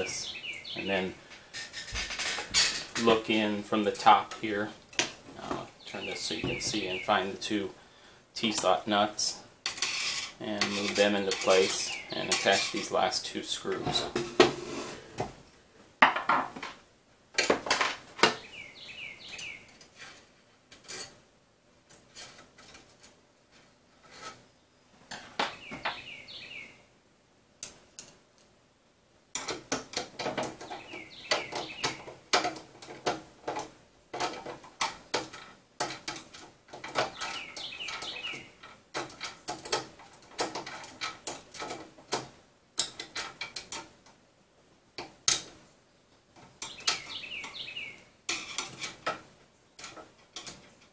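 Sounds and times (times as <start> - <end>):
small metal parts clinking: 9.6 - 12.9
faint bird chirps: 18.4 - 19.8, 45.9 - 48.1.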